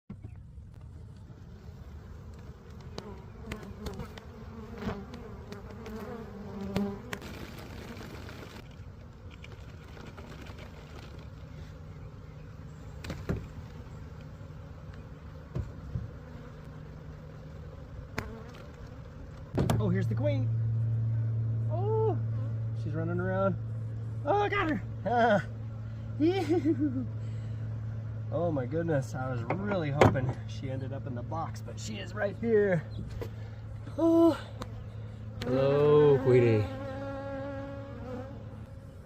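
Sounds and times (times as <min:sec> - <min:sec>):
honeybees buzzing: 0:00.8 - 0:39.0.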